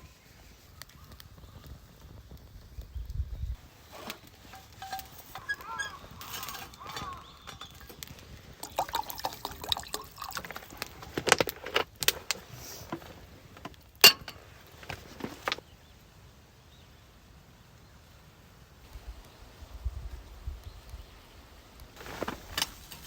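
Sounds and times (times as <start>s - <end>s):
small hard objects clinking: 3.9s - 12.5s.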